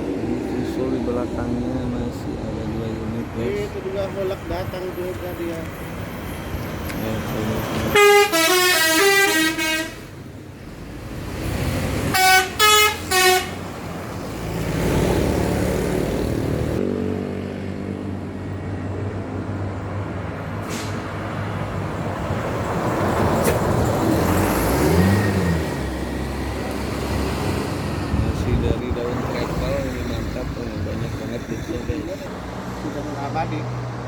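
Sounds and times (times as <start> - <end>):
bus engine: 0.0 - 34.0
road noise: 0.0 - 34.0
multi-tone bus horn: 7.8 - 10.2, 12.1 - 13.8.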